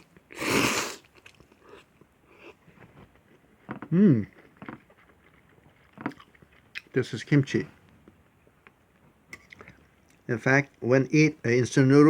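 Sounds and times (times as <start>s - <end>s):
person humming: 3.9s - 4.3s.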